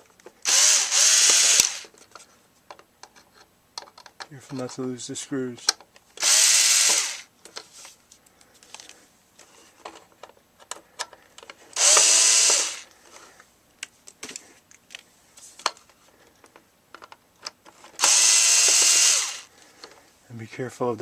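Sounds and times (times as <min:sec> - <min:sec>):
power drill-driver whirring: 0:00.4 - 0:01.9, 0:06.2 - 0:07.3, 0:11.8 - 0:12.9, 0:18.0 - 0:19.5
clicks and taps of screws: 0:02.0 - 0:04.8, 0:15.6 - 0:18.2.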